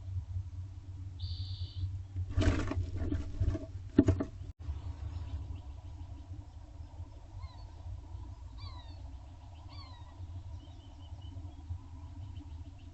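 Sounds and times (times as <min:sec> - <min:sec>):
steady low rumble: 0:00.0 - 0:12.9
small bird chirping: 0:01.2 - 0:01.9, 0:04.4 - 0:12.9.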